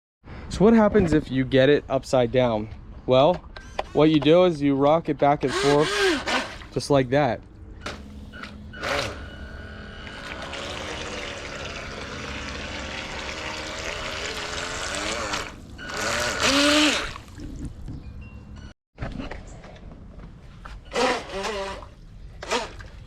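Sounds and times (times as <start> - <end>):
rc boat propeller churning water: 5.4 - 7.0, 7.8 - 17.8, 20.9 - 23.0.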